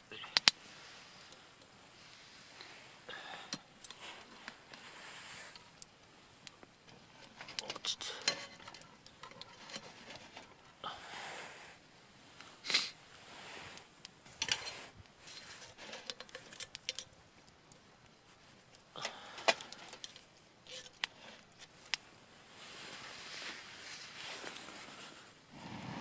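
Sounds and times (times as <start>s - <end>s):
small metallic clinks: 14.3s - 17.8s.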